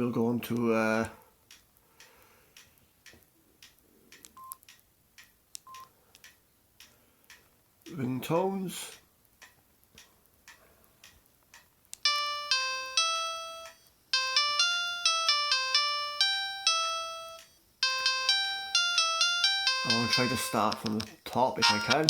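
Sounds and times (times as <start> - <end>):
mobile phone ringtone melody: 12.0 - 21.0, 21.6 - 22.0
faint phone key clicks: 20.1 - 21.2.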